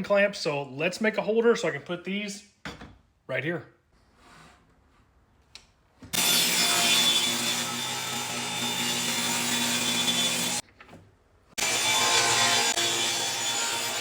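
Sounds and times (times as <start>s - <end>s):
power saw cutting wood: 6.1s - 10.6s, 11.6s - 14.0s.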